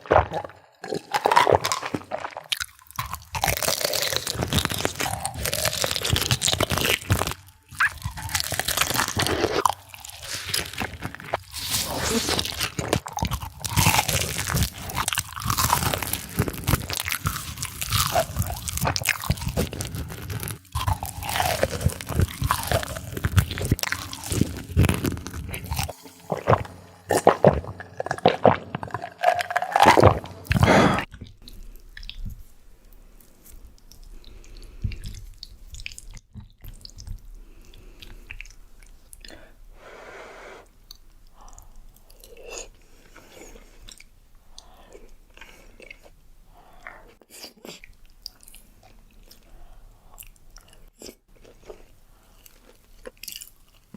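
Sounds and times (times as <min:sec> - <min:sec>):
crunching crisp food: 0:00.0 - 0:37.1, 0:50.2 - 0:53.9
soft chewing: 0:00.0 - 0:39.6, 0:40.7 - 0:53.9.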